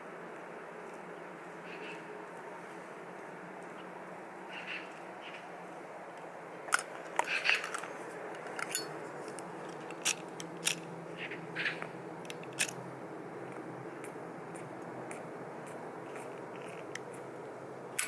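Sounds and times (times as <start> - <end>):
steady low hum: 0.0 - 18.0
handling clicks and crackles: 6.1 - 12.9, 13.5 - 17.3.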